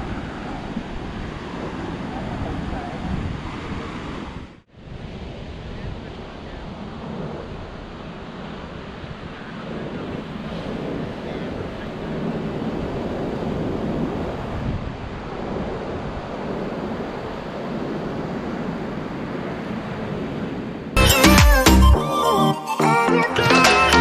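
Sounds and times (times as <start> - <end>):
surf washing on beach: 0.0 - 21.0
wind on microphone: 0.0 - 21.0
music: 21.0 - 24.0.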